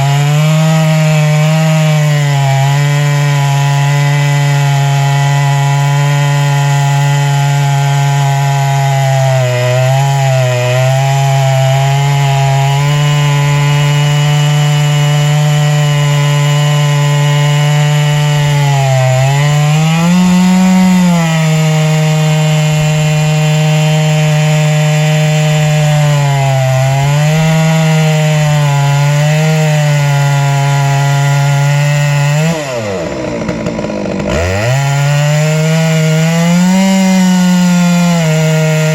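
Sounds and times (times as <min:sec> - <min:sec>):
chainsaw ripping a log: 0:00.0 - 0:38.9.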